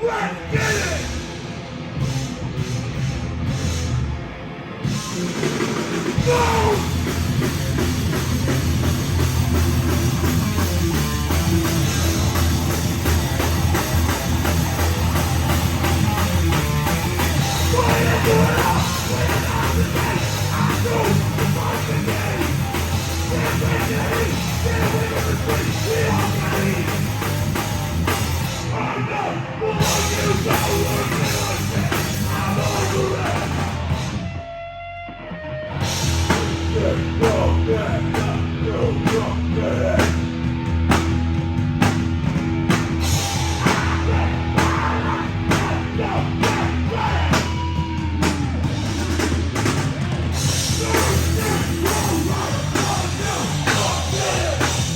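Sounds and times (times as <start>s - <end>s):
heavy rock band playing: 0.0s - 54.9s
shouted singing: 6.1s - 7.2s, 17.4s - 27.4s, 28.6s - 33.9s, 43.4s - 48.6s, 50.4s - 54.9s.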